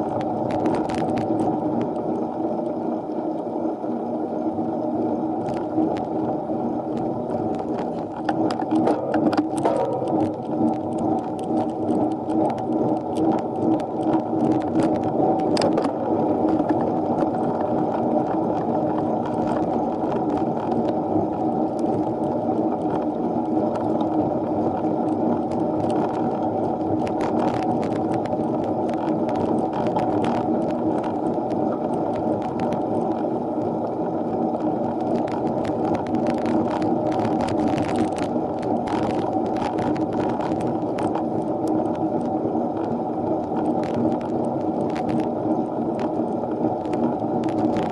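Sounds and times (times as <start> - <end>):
road and wind noise: 0.0 - 47.9
light bicycle clicks: 7.0 - 33.7, 35.0 - 45.3.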